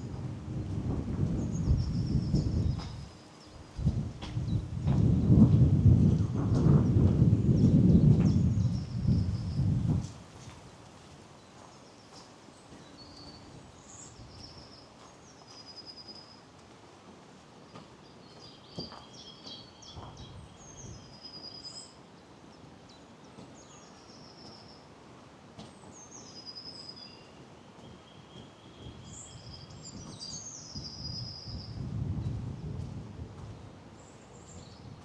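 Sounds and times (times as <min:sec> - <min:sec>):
birds singing: 0:01.3 - 0:03.7, 0:18.0 - 0:24.9, 0:25.7 - 0:31.8.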